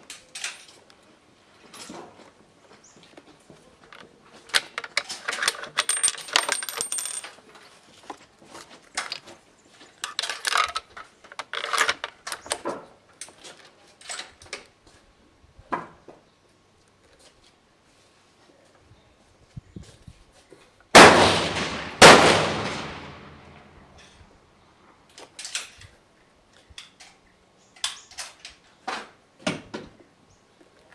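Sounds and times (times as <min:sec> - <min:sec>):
rifle bolt and cartridges clicking: 0:10.0 - 0:13.4
gunshot: 0:21.0 - 0:23.6.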